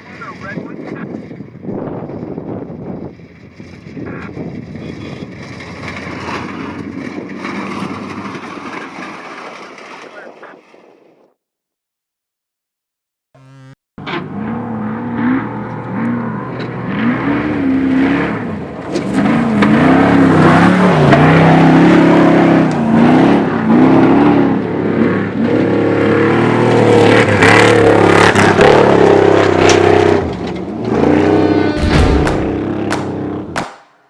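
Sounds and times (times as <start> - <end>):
engine revving hard: 13.4 - 33.6
sharp cracks: 31.8 - 34.0.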